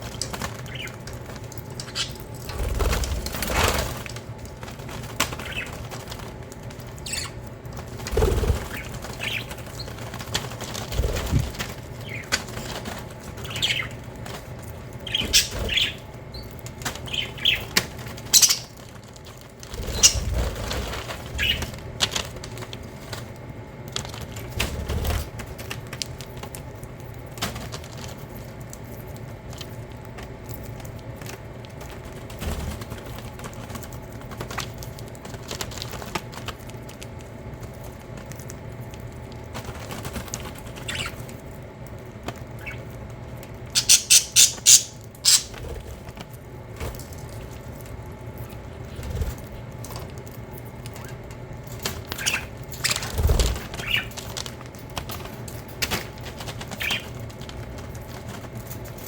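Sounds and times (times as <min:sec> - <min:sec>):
budgerigar chirps: 0:18.4 - 0:18.7, 0:43.8 - 0:45.5.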